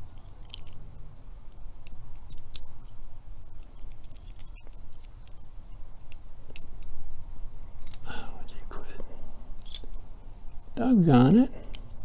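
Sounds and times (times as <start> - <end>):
metal lock parts clicking: 0.0 - 0.8, 1.8 - 2.7, 3.6 - 5.4, 9.6 - 10.0.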